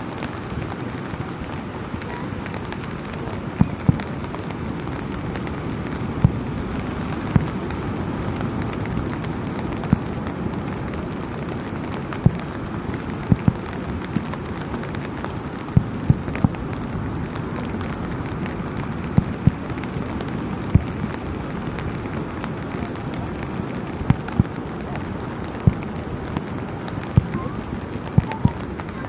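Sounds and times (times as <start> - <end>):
steady rushing noise: 0.0 - 29.0
fireworks bangs: 25.5 - 29.0.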